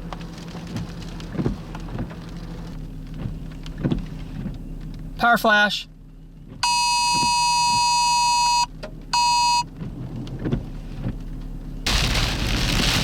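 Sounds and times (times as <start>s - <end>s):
electronic alert beep: 6.6s - 9.6s
heavy rain pelting down: 11.9s - 13.0s.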